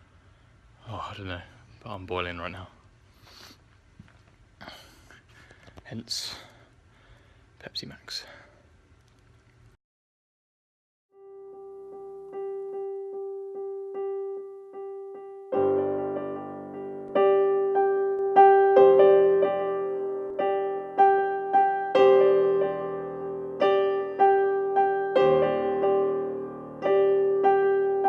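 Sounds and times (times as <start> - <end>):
piano music: 11.1 - 28.0.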